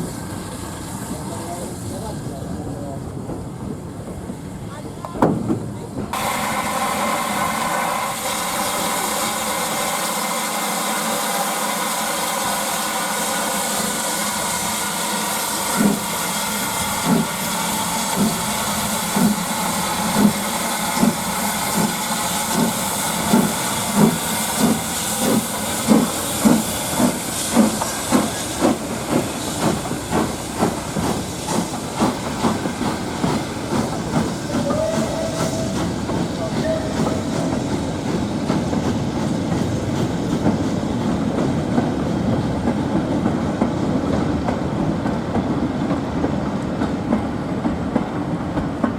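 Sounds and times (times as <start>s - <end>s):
steam locomotive exhaust beats: 0.0s - 48.9s
steam hissing: 5.4s - 43.9s.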